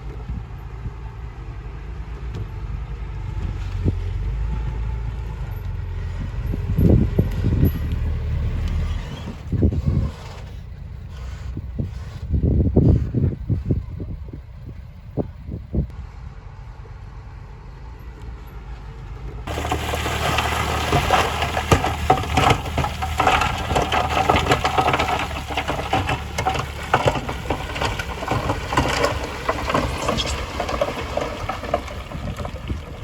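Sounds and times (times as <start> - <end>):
heavy machinery diesel engine: 0.0 - 33.0
gravel and stones crunching: 18.6 - 33.0.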